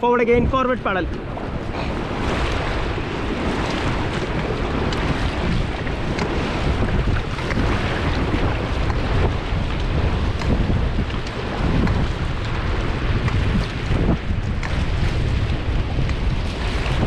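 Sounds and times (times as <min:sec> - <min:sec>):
rushing whitewater: 0:00.0 - 0:17.0
wind buffeting microphone: 0:00.0 - 0:17.0.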